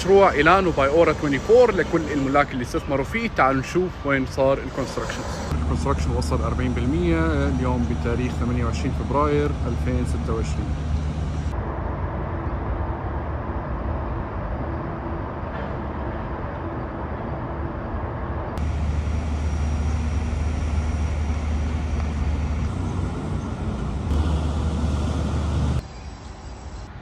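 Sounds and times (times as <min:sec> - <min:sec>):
low hum: 0:00.0 - 0:27.0
traffic rumble: 0:00.0 - 0:27.0.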